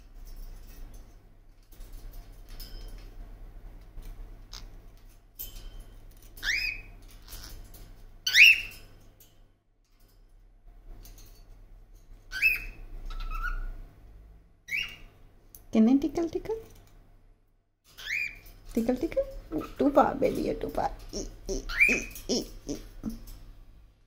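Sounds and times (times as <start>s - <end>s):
parrot whistled chirps: 21.7s - 22.2s.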